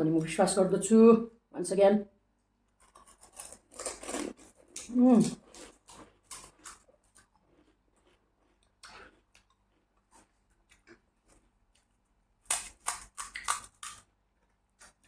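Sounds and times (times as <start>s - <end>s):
crisp crunches of snack: 2.8s - 9.6s
faint mouth chewing noises: 4.1s - 12.0s.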